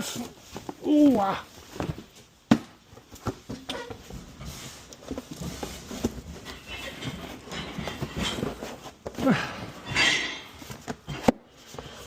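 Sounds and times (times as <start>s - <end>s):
household items knocking and clattering: 1.7s - 12.0s.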